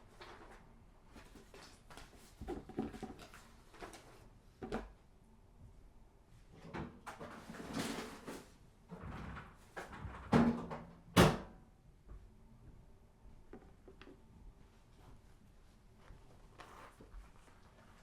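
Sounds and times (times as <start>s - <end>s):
soft rustle: 14.5s - 18.0s.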